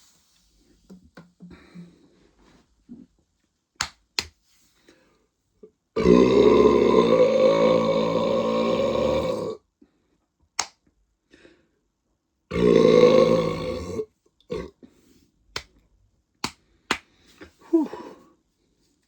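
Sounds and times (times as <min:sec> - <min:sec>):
man burping loudly: 0:06.0 - 0:09.6, 0:12.5 - 0:14.8.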